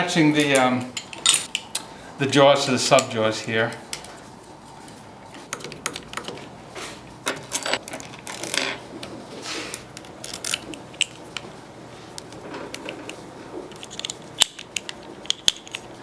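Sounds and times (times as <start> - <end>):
metal parts clinking: 0.4 - 1.8, 7.3 - 8.8, 9.7 - 11.2, 12.7 - 15.8.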